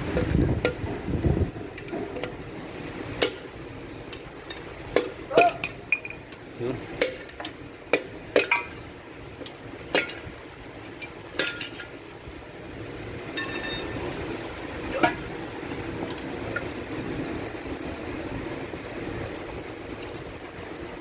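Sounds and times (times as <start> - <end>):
steady low hum: 0.0 - 21.0
ringing metallic ping: 13.3 - 14.0.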